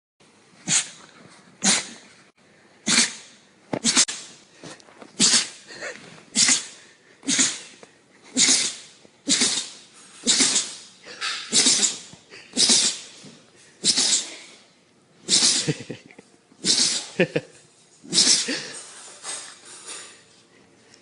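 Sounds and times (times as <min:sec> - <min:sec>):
short sharp sneezes: 0:00.6 - 0:01.0, 0:01.6 - 0:02.1, 0:02.8 - 0:04.4, 0:05.2 - 0:05.7, 0:06.3 - 0:14.6, 0:15.3 - 0:15.8, 0:16.6 - 0:17.2, 0:18.1 - 0:19.4.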